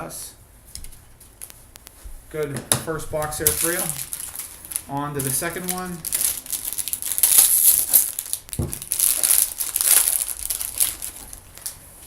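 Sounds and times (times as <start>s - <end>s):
plastic wrapping crinkling and tearing: 1.2s - 2.0s, 2.9s - 12.0s.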